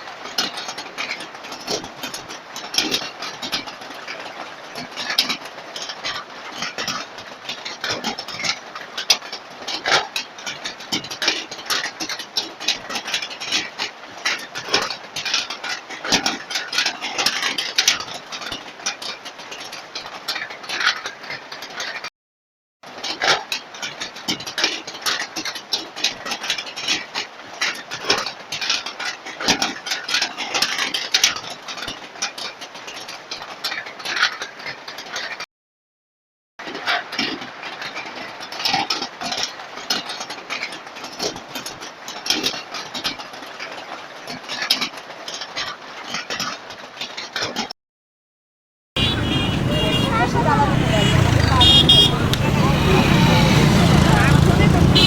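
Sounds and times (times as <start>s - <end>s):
heavy rain falling: 49.0s - 55.0s.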